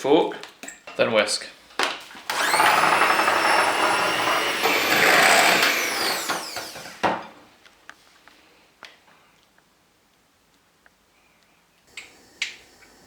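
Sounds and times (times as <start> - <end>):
electric whisk running: 2.3 - 7.0.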